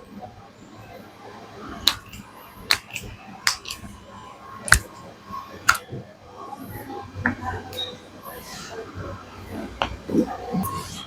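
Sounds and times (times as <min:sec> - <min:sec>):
joint cracking pops: 0:01.9 - 0:03.9, 0:04.7 - 0:04.9.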